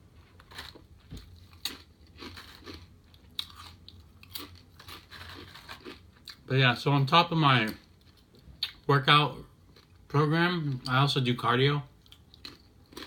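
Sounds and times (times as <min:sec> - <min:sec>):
chewing a sandwich: 0:00.2 - 0:06.5, 0:12.0 - 0:13.0.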